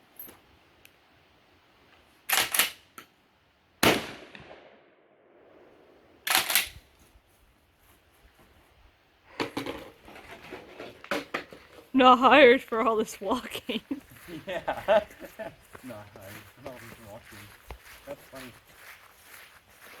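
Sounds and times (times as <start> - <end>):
shotgun shots: 3.8 - 4.9, 6.2 - 6.8.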